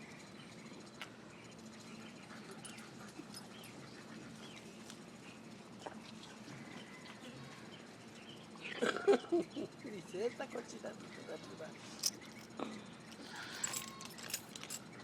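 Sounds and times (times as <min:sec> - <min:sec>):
low steady background hum: 0:00.0 - 0:15.0
dogs playing clicks and scuffles: 0:00.8 - 0:07.2, 0:11.9 - 0:12.5, 0:13.1 - 0:15.0.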